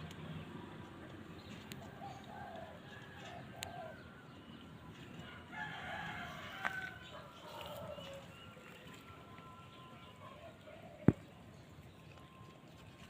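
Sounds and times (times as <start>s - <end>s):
rooster crowing: 5.2s - 9.0s.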